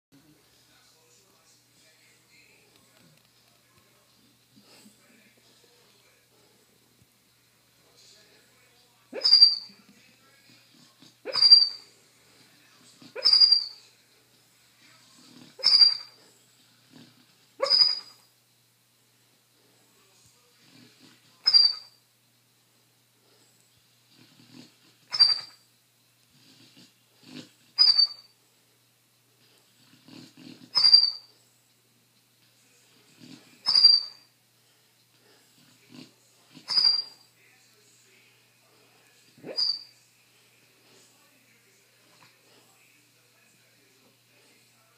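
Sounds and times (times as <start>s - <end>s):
dog snoring with whistle: 15.1s - 16.2s, 16.8s - 18.2s, 24.1s - 25.6s, 26.4s - 28.3s, 29.4s - 31.3s, 32.9s - 34.3s, 35.4s - 37.2s, 39.3s - 39.9s.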